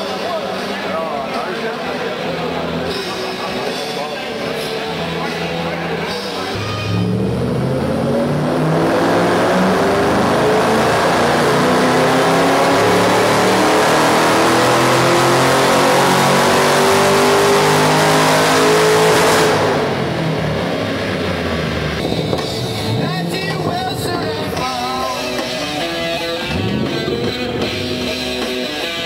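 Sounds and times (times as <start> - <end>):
car engine full-throttle pull: 6.5 - 24.1.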